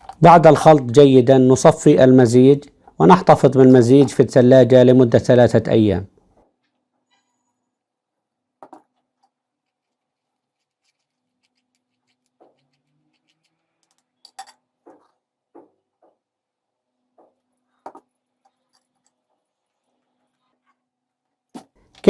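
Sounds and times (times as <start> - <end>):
glassware and utensils clinking: 13.9 - 14.8.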